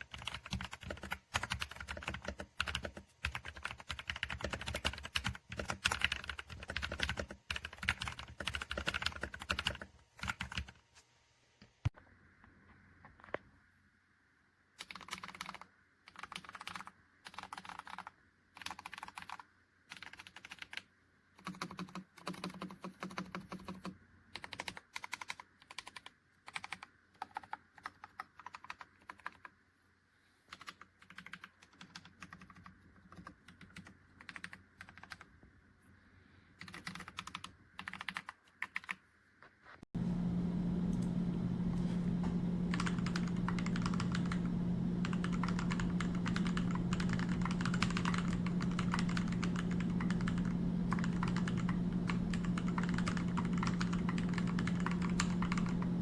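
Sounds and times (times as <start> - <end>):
typing on mechanical keyboard: 0.0 - 10.8, 14.8 - 29.6, 30.5 - 35.4, 36.6 - 39.0, 42.7 - 56.0
low steady hum: 39.9 - 56.0.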